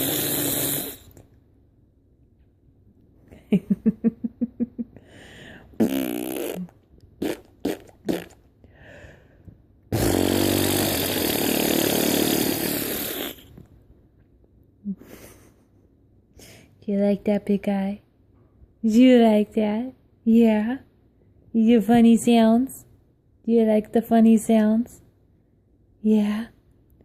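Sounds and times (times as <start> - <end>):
blown raspberry: 0.0 - 1.2, 5.8 - 8.4, 9.9 - 13.6
mouth pops: 5.8 - 8.4, 9.9 - 13.6
mouth trill: 5.8 - 8.4, 9.9 - 13.4.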